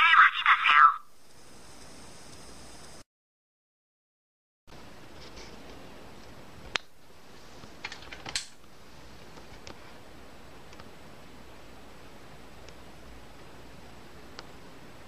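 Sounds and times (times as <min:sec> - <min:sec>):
steady hiss: 0:01.2 - 0:03.0.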